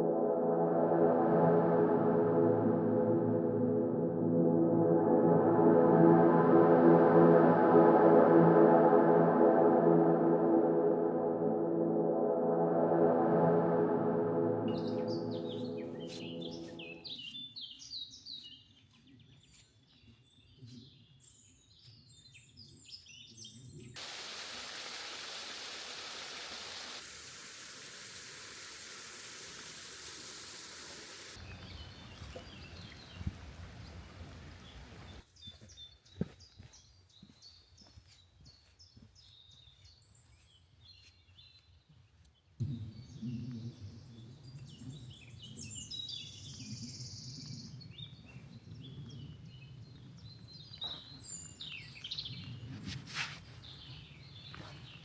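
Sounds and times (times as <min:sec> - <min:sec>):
small birds chirping: 0:14.7 - 0:24.0, 0:30.8 - 0:52.7
rushing hiss: 0:24.0 - 0:31.4.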